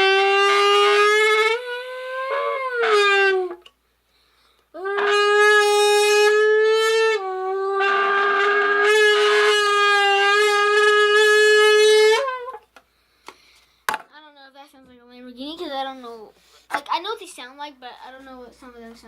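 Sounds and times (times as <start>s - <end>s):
blowing into soda can: 0.0s - 13.6s.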